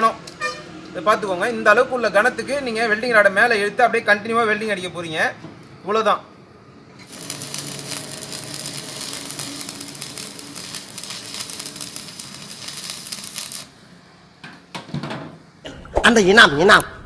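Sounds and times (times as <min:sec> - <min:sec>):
welding arc crackling: 0:07.0 - 0:13.9.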